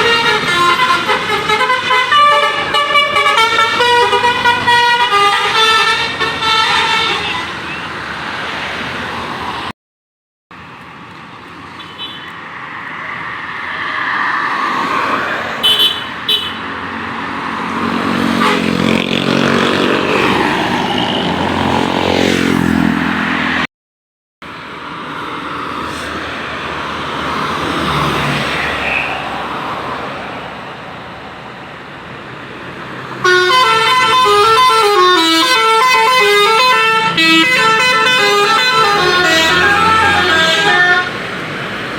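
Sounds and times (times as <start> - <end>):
multi-tone musical air horn: 0.0 - 7.6, 18.4 - 18.8, 33.2 - 41.2
passing bus and traffic: 0.0 - 9.8, 10.5 - 23.7, 24.4 - 41.9.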